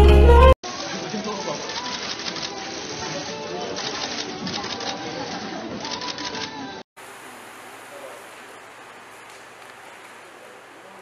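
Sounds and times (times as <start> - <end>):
steady background hiss: 7.0 - 11.0.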